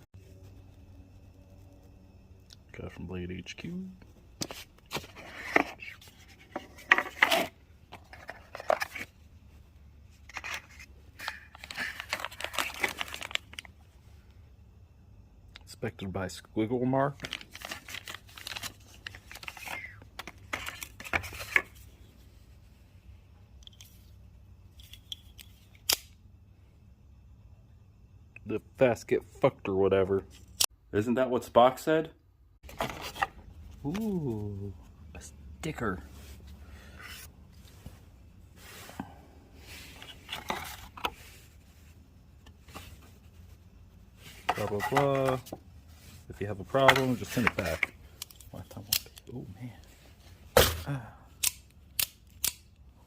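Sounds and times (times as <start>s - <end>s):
paper and box rustling: 4.4s - 9.2s, 10.2s - 13.7s, 17.2s - 21.8s, 39.8s - 41.6s, 44.3s - 45.6s, 46.6s - 47.9s.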